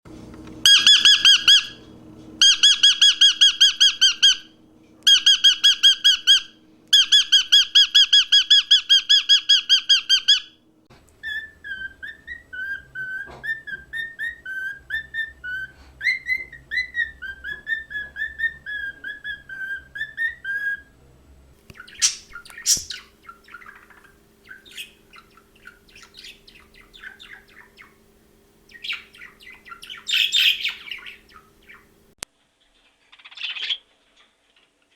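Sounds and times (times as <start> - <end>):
cockatiel calling loudly: 0.6 - 1.8, 2.4 - 4.5, 5.1 - 10.5, 21.8 - 28.0, 28.7 - 31.9
cockatiel whistling a song: 0.6 - 1.8, 2.4 - 10.6, 11.2 - 20.9, 21.7 - 28.0, 28.7 - 31.9
budgerigars chattering: 0.7 - 1.8, 2.4 - 4.5, 5.1 - 10.5, 21.7 - 28.0, 28.7 - 31.9.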